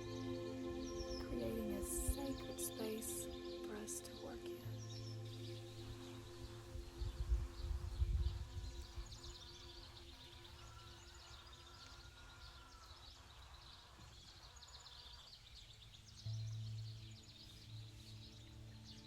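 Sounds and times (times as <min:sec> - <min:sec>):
soft background music: 0:00.0 - 0:12.1, 0:16.1 - 0:19.0
small birds chirping: 0:00.0 - 0:19.0.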